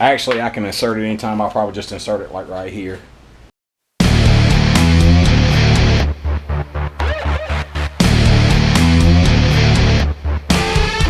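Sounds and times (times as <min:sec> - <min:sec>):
heavy rock music: 0:04.0 - 0:11.0.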